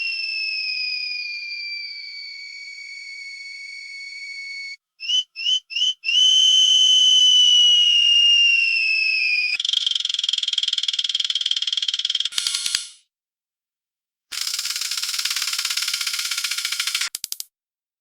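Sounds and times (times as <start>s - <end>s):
fishing reel spool whine: 0.0s - 4.8s
fast reel clicking: 9.6s - 13.0s, 14.3s - 17.5s.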